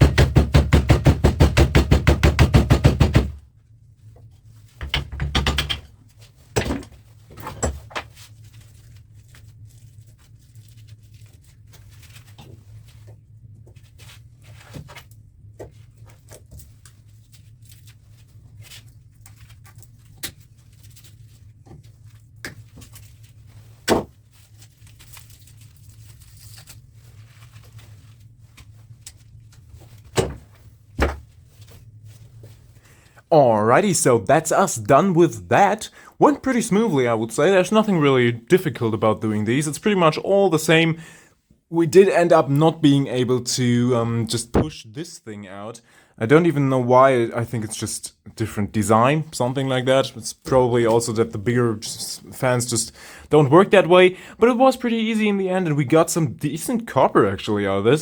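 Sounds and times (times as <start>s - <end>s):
metal parts knocking and clunking: 4.8s - 5.9s.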